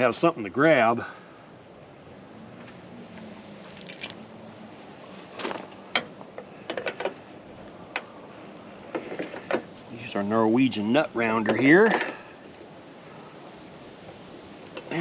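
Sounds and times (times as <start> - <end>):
faint steady hum: 0.0 - 15.0
tools and metal parts clicking: 3.8 - 4.2.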